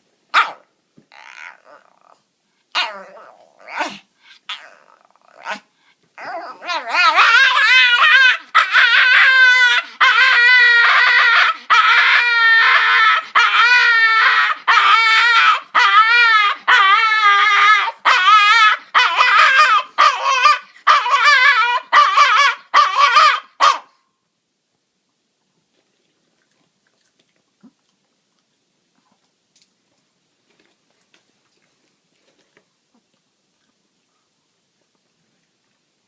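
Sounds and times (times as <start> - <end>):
dog crying high-pitched: 2.8 - 4.8, 6.2 - 23.9.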